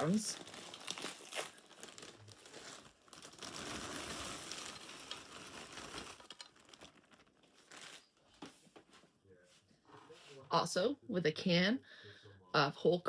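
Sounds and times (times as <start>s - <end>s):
plastic bag crinkling: 0.0s - 8.5s
potatoes pouring into a dish: 0.4s - 8.0s.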